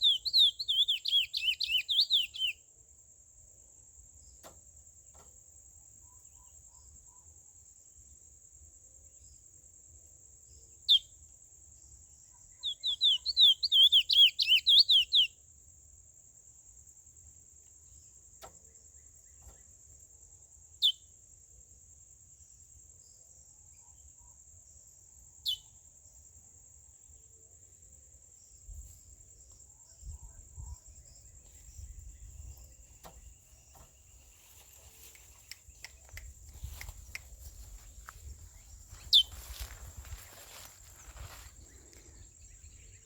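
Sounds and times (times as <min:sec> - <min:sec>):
falling whistled bird chirp: 0:00.0 - 0:02.6, 0:12.5 - 0:15.3, 0:38.6 - 0:43.0.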